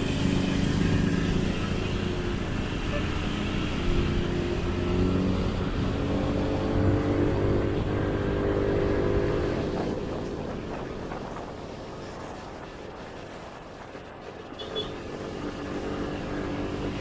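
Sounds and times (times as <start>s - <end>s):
road noise: 0.0s - 17.0s.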